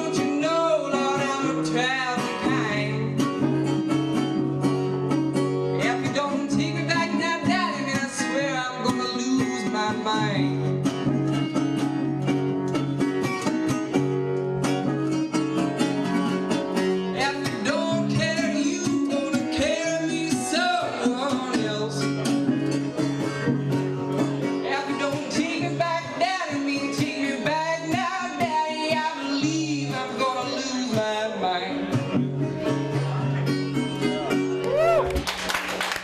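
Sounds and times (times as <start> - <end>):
person singing: 0.0 - 3.3, 5.6 - 10.7, 17.2 - 22.2, 24.4 - 33.2
guitar picking and strumming: 0.0 - 35.5.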